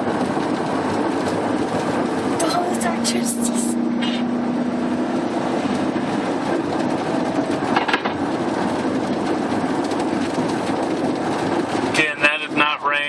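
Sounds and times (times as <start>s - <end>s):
car driving hum: 0.0s - 13.0s.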